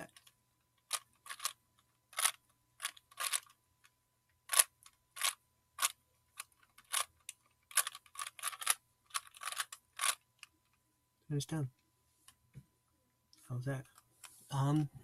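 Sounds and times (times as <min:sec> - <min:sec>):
puzzle cube clicks and clacks: 0:00.0 - 0:01.6, 0:02.2 - 0:03.6, 0:04.5 - 0:10.2.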